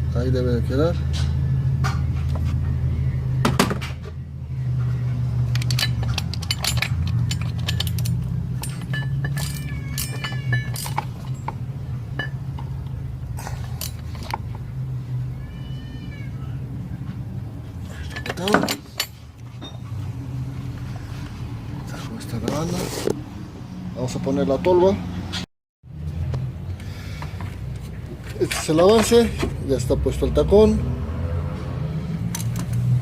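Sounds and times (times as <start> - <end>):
metal tools clinking: 5.4 - 12.8, 13.4 - 14.7, 17.9 - 20.0, 28.2 - 29.5.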